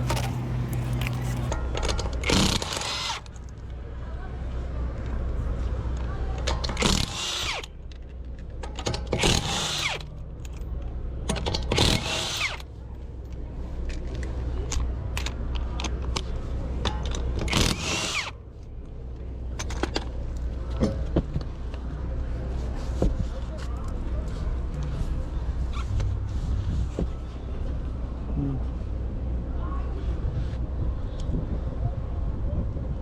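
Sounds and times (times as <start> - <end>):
low engine hum: 0.0 - 6.4, 18.4 - 33.0.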